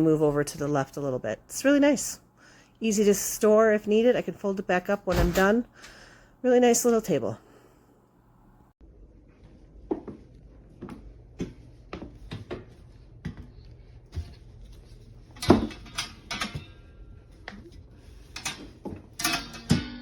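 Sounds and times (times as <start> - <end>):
objects knocking and rustling: 15.3 - 20.0.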